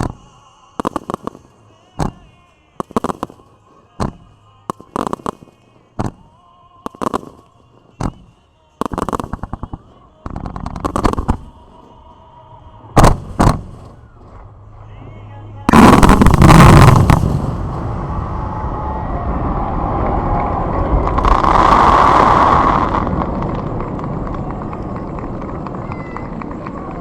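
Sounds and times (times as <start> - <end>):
firework shells bursting with bangs: 0.0 - 12.0, 13.0 - 14.2, 15.7 - 17.7
rapid crackling reports: 0.8 - 6.2, 6.9 - 8.2, 8.8 - 11.8, 15.7 - 17.8.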